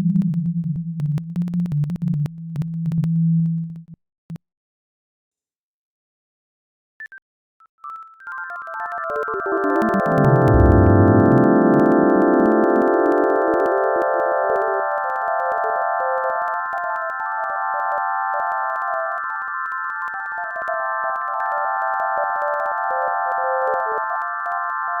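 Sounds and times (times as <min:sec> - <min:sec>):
dense chord of sine tones: 0:09.9 - 0:13.4.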